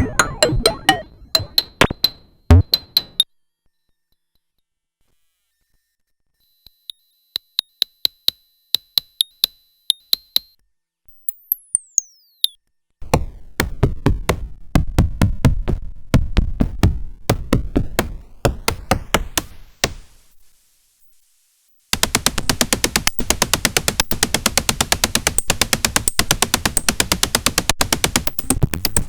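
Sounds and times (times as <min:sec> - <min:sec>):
falling electronic zap: 0:00.0 - 0:01.5
electronic clicks: 0:00.0 - 0:03.0, 0:22.0 - 0:29.0.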